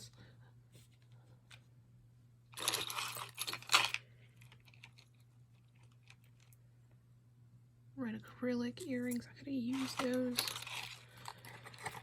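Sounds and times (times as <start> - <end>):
packaging rustling and crinkling: 9.7 - 12.0.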